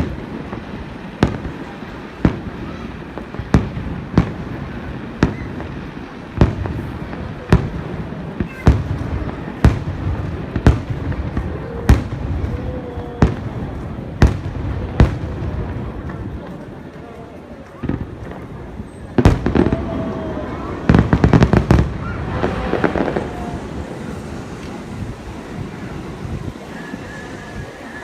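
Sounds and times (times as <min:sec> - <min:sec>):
fireworks bangs with rumble: 0:00.0 - 0:28.0.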